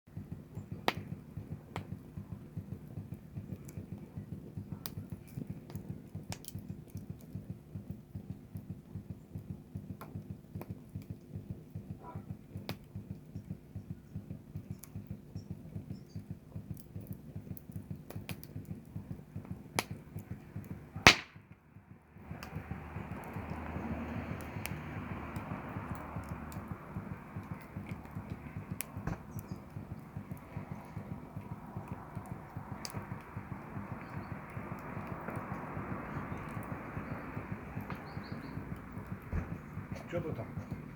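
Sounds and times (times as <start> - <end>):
campfire crackling and popping: 0.1 - 40.9
loud sharp snap: 21.0 - 21.4.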